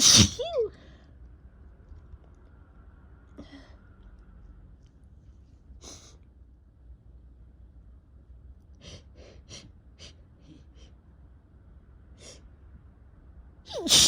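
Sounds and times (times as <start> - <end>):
person sneezing: 0.0 - 0.5, 13.7 - 14.0.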